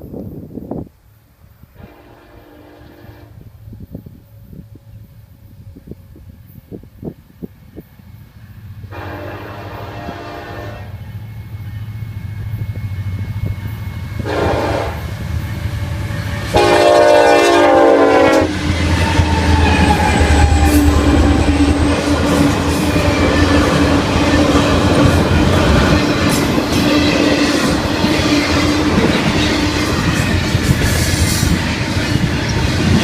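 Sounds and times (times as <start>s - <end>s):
diesel locomotive engines rumbling: 0.0s - 33.0s
train horn blasts: 1.7s - 3.6s, 8.8s - 11.8s, 13.4s - 15.2s, 16.2s - 33.0s
train wheels clacking on rails: 18.1s - 33.0s.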